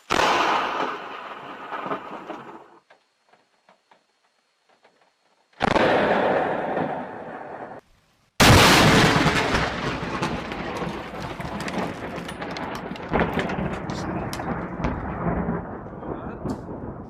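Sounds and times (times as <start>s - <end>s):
thunder rumbling and crackling: 0.0s - 2.8s, 8.4s - 17.0s
sharp thunderclap: 0.1s - 2.7s, 8.4s - 17.0s.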